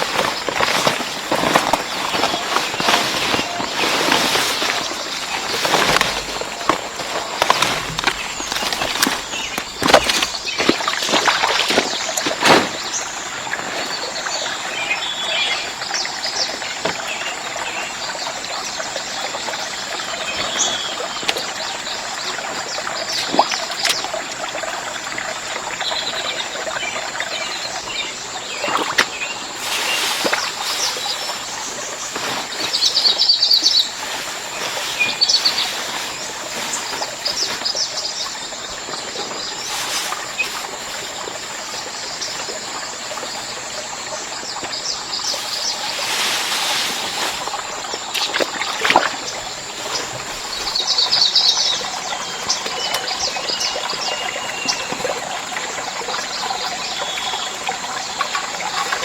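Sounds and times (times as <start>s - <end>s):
birds chirping: 0.0s - 59.0s
steady background hiss: 27.8s - 52.5s.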